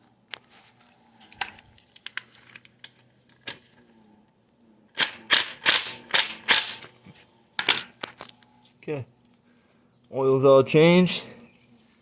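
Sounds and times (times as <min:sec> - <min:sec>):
tools and parts handling clicks: 0:05.0 - 0:06.9.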